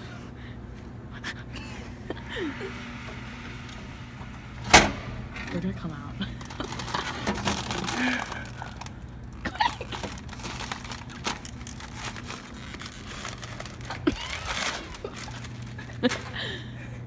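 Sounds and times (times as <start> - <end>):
snack packet crinkling: 6.4 - 16.4.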